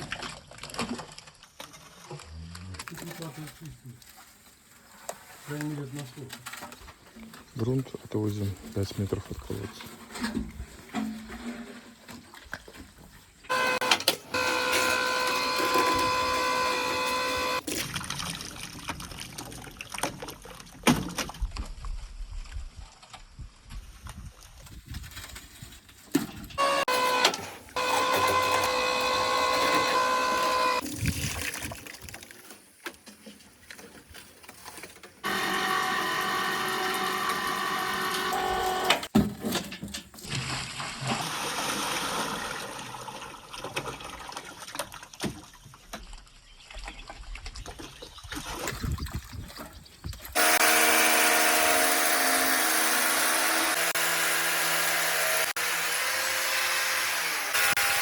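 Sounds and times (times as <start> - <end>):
motor-driven machine humming: 13.5 - 17.6, 26.6 - 30.8, 35.2 - 39.1, 50.4 - 55.8.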